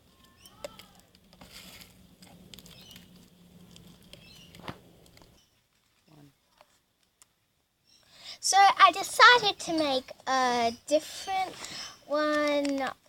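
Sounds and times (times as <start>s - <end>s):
crunchy slime crackling and clicking: 0.0s - 5.4s.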